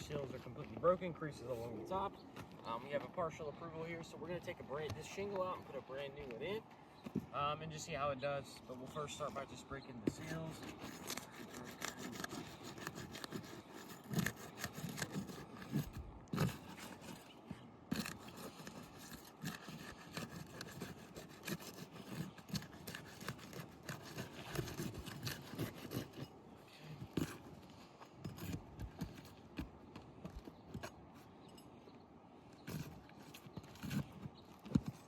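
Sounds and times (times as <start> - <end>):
roof shingles scraping and crackling: 8.9 - 26.2.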